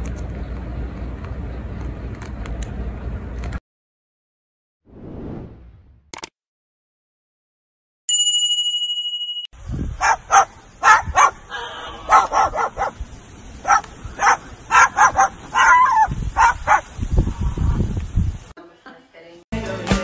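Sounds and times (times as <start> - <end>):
bright ringing chime: 8.1 - 9.5
parrot imitating dog barks: 10.0 - 13.0, 13.6 - 16.9.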